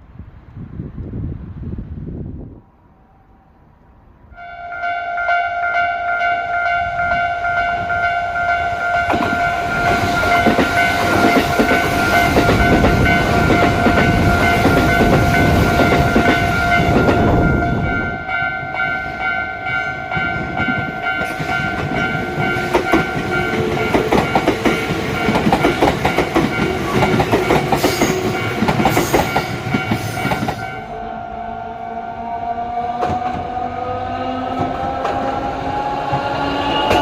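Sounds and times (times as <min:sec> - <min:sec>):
train rumbling past: 0:00.0 - 0:37.0
level-crossing warning bell: 0:04.3 - 0:32.5
train wheels clicking over rail joints: 0:20.2 - 0:30.7.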